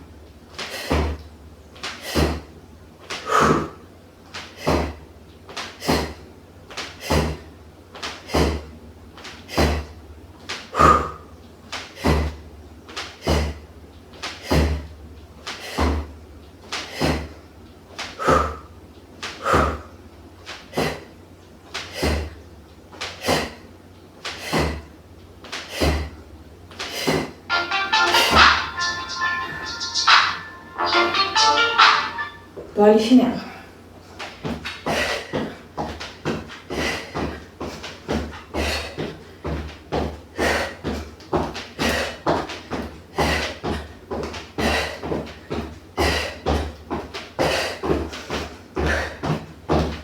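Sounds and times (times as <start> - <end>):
feet landing on floor: 0.6 - 1.2, 34.2 - 50.0.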